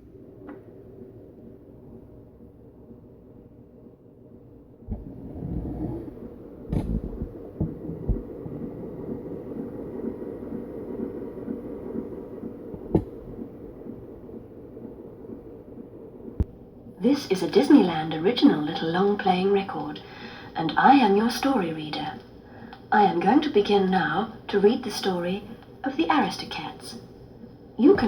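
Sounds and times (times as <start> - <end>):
record surface noise rumble: 0.0 - 28.0
record clicks and pops: 6.7 - 9.3, 12.7 - 14.0, 16.4 - 16.6.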